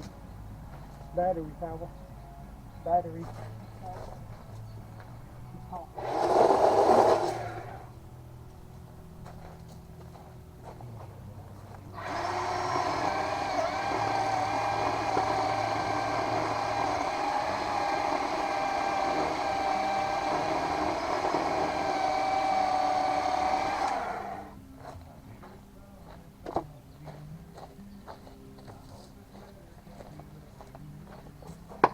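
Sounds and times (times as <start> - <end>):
electric chainsaw whining: 5.9 - 8.0, 11.9 - 24.6.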